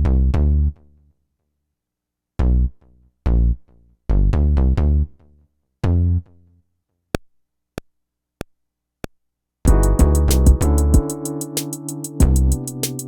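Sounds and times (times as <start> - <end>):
deep pitched beat notes: 9.7 - 13.0.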